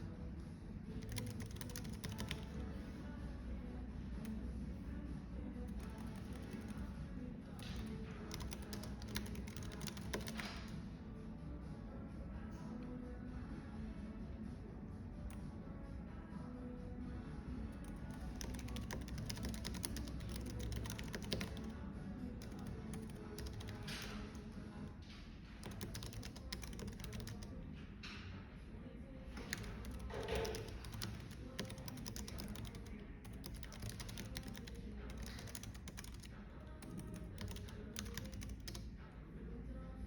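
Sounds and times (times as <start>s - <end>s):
soft music: 0.0s - 40.0s
typing on computer keyboard: 0.9s - 2.8s, 5.6s - 10.8s, 17.7s - 24.8s, 25.5s - 27.6s, 29.3s - 38.9s.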